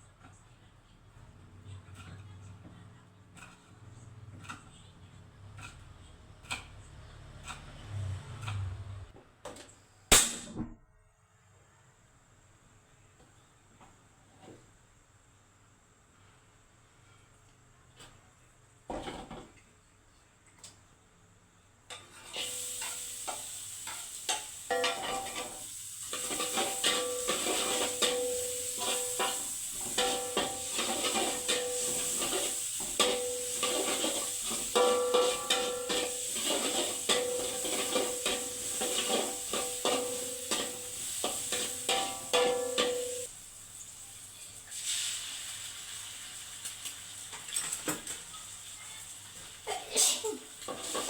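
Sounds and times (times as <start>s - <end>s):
spatula scraping a pan: 21.9s - 43.3s, 50.7s - 51.0s
rice sizzling in a pan: 21.9s - 51.0s.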